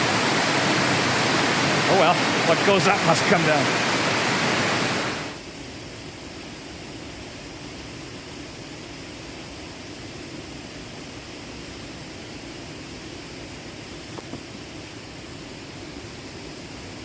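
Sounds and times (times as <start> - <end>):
waterfall rushing: 0.0 - 5.4.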